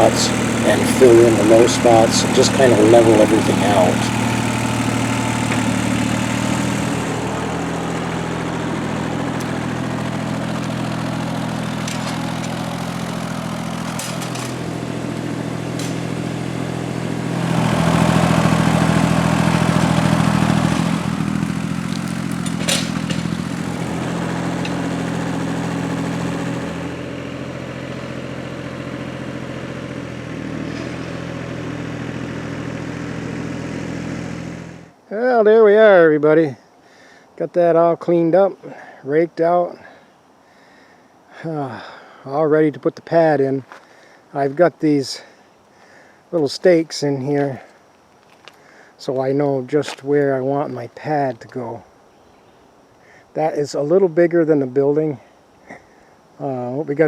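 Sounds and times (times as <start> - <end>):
tractor engine running: 0.0 - 35.0.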